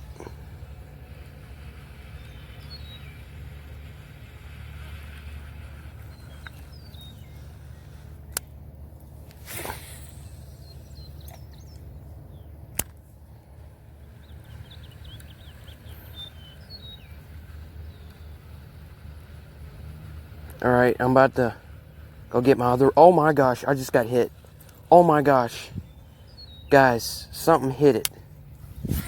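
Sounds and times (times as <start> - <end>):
small birds chirping: 0.0 - 29.0
brief swish: 9.4 - 10.4
wind rumble on microphone: 25.6 - 26.7, 28.4 - 29.0.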